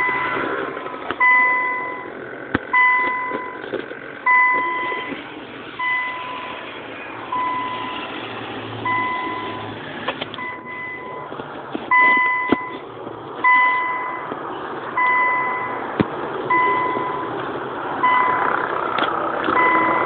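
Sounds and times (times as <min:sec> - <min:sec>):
electronic beeper long beeps: 0:05.8 - 0:06.7, 0:07.3 - 0:08.1, 0:16.5 - 0:17.3, 0:19.6 - 0:20.0.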